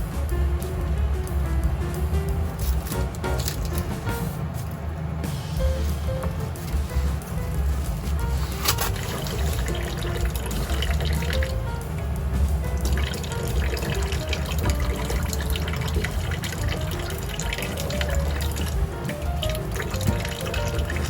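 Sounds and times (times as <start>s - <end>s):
background music with bass line: 0.0s - 21.0s
tap water running into sink: 8.6s - 11.5s, 12.6s - 21.0s.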